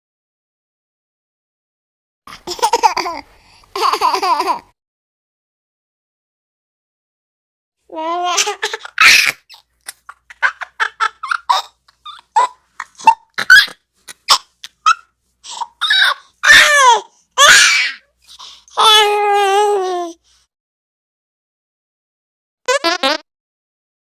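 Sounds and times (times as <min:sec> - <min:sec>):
baby laughing and squealing: 0:02.3 - 0:04.7, 0:07.9 - 0:18.0.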